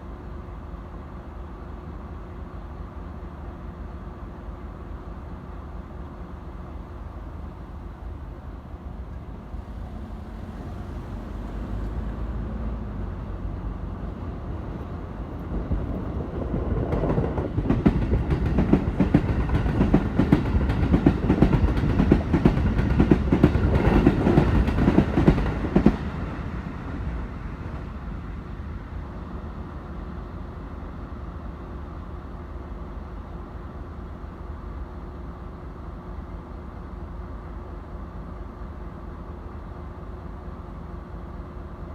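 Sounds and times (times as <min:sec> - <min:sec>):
electric train passing: 0:05.7 - 0:36.3.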